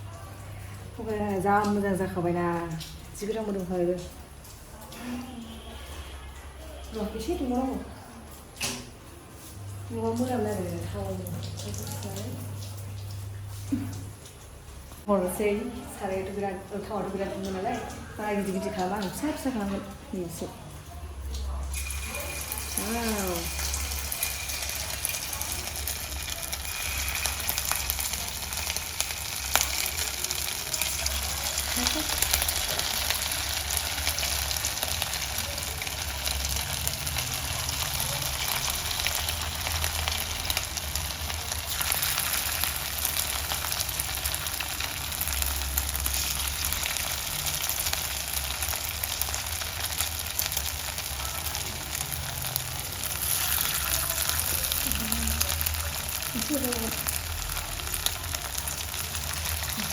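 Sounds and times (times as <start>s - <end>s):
food sizzling in hot oil: 21.7s - 59.9s.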